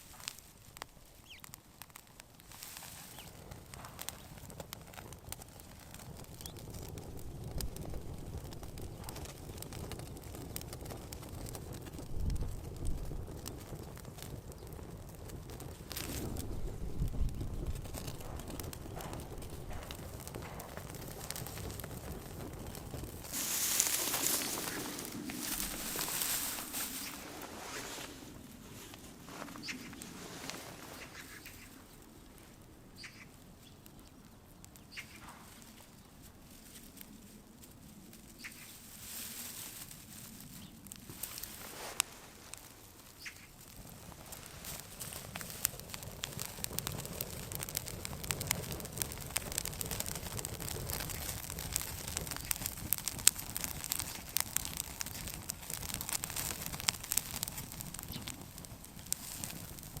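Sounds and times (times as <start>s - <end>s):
soft steady hiss: 0.0s - 9.4s, 12.0s - 47.7s
campfire crackling: 0.0s - 60.0s
bird chirps: 33.0s - 33.8s.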